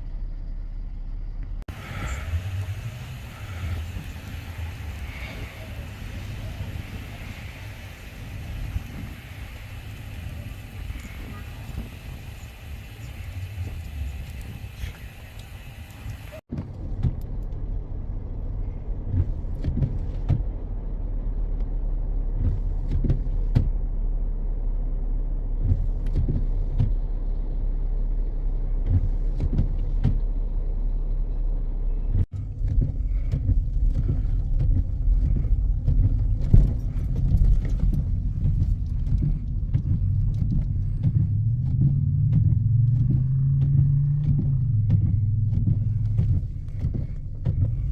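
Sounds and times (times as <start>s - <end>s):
car engine and road rumble: 0.0s - 47.9s
knocks and bumps: 19.1s - 20.6s, 25.6s - 27.0s, 28.8s - 30.4s, 32.1s - 47.9s.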